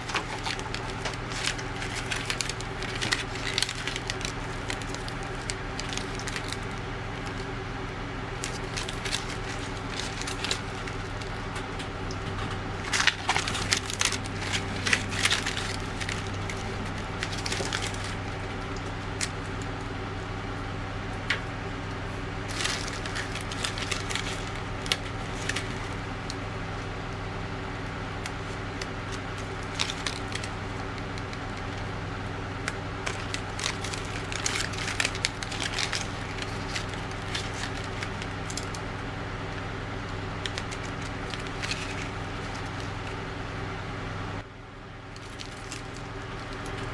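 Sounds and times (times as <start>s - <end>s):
crackling and rustling: 0.0s - 43.7s, 44.4s - 46.9s
steady low hum: 0.0s - 46.9s.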